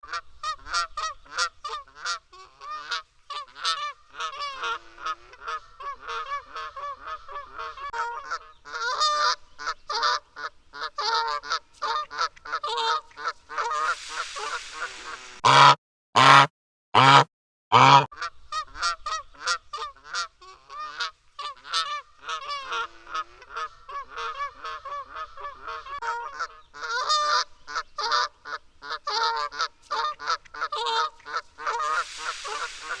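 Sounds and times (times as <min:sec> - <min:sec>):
goose honking: 0:00.1 - 0:33.0
hiss-like noise: 0:13.1 - 0:15.4, 0:31.2 - 0:33.0.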